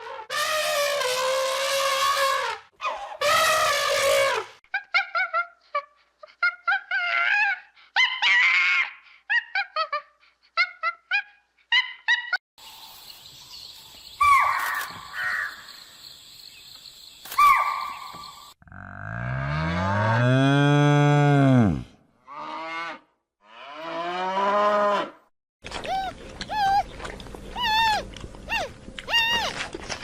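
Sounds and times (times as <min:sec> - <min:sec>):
drawn-out falling bird calls: 0:13.6 - 0:18.6
birds short clipped calls: 0:14.2 - 0:15.8.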